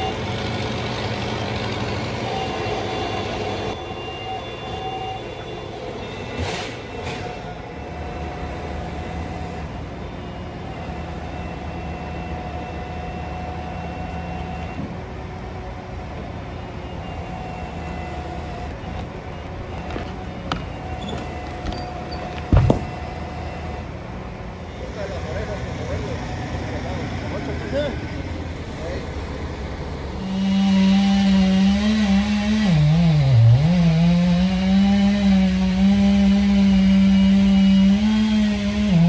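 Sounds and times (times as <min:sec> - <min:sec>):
large engine running: 0:00.0 - 0:03.8, 0:14.0 - 0:24.7
heavy thump: 0:18.8 - 0:23.2.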